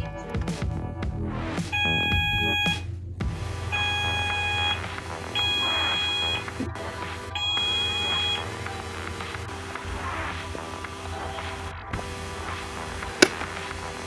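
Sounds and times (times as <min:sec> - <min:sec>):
fire alarm beeping: 0:01.8 - 0:02.9, 0:03.6 - 0:10.3.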